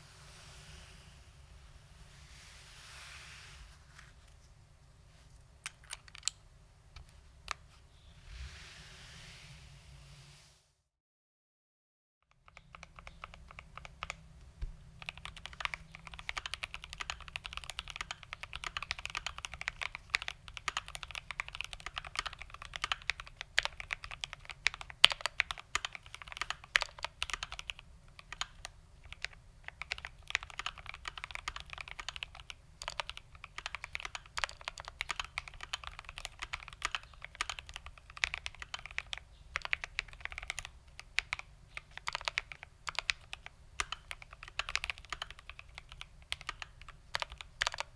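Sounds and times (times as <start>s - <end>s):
fast mechanical keyboard typing: 5.9s - 6.4s, 12.4s - 14.3s, 14.9s - 47.9s.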